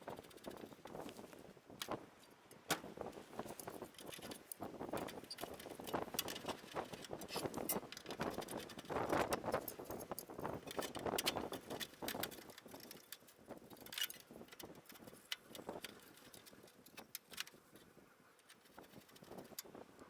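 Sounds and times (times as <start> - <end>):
tools and metal parts clinking: 3.6 - 17.6.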